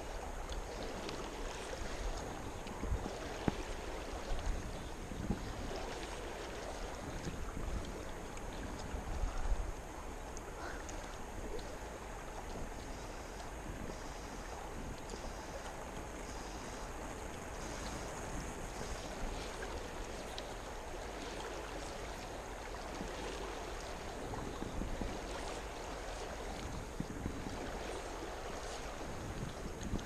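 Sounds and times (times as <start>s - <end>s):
river water rushing: 0.0s - 30.0s
faint clicks: 0.4s - 1.3s.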